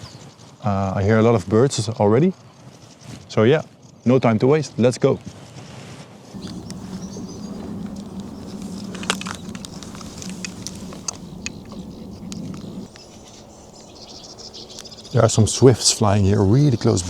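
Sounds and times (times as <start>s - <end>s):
high bird calls: 6.4s - 17.0s
steady low hum: 6.4s - 17.0s.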